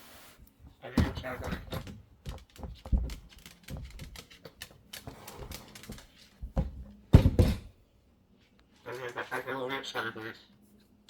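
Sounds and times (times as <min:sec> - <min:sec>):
pet carrier clicks and knocks: 0:01.0 - 0:04.3, 0:05.7 - 0:07.7.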